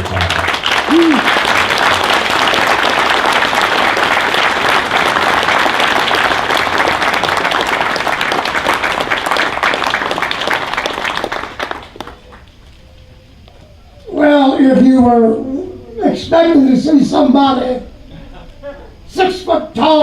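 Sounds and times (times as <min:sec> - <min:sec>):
audience applauding: 0:00.0 - 0:12.5.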